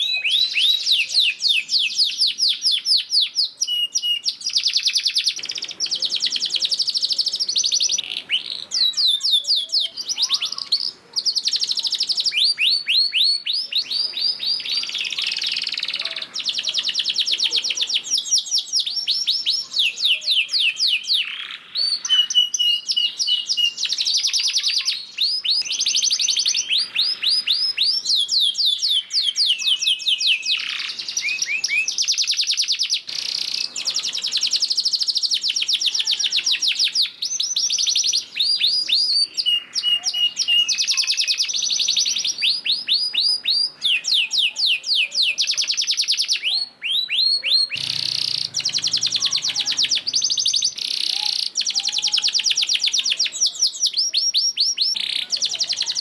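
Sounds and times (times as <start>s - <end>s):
canary singing trills: 0.0s - 56.0s
canary piping notes: 35.8s - 56.0s.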